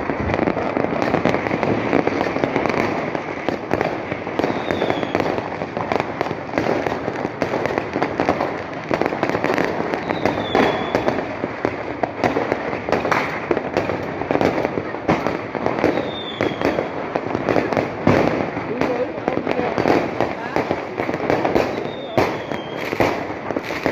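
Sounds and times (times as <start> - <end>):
fireworks crackling and banging: 0.0 - 23.9
firework whistle: 4.4 - 5.4, 9.9 - 11.3, 15.8 - 17.0, 21.5 - 23.9.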